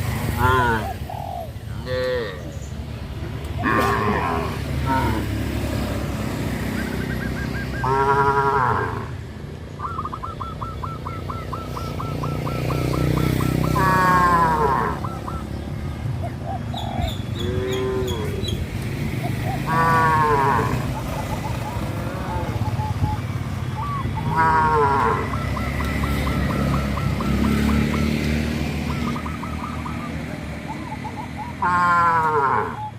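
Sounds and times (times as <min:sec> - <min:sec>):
cattle mooing: 0:03.6 - 0:05.4, 0:07.8 - 0:09.2, 0:13.8 - 0:15.0, 0:17.5 - 0:18.4, 0:19.7 - 0:20.9, 0:21.9 - 0:22.6, 0:24.3 - 0:25.3, 0:31.6 - 0:32.8.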